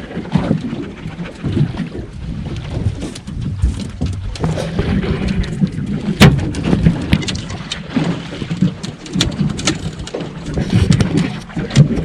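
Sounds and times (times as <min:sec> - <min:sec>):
water slapping against boat hull: 0:00.0 - 0:12.0
low rumble: 0:04.2 - 0:07.0.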